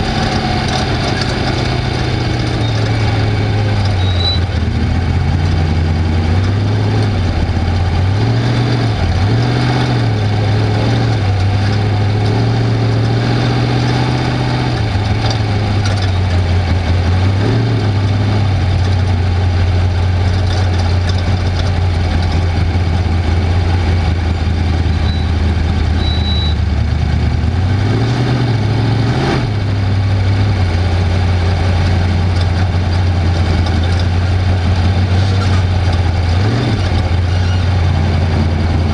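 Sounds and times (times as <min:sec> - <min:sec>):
race vehicle engine revving: 0:00.0 - 0:38.9.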